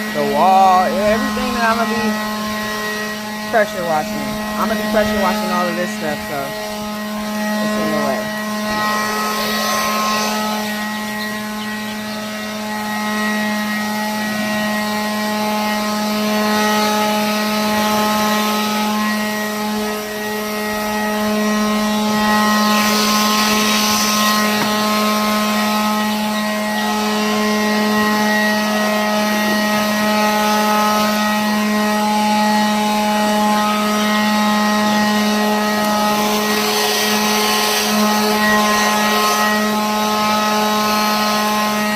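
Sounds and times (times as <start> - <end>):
leaf blower running: 0.0 - 41.9.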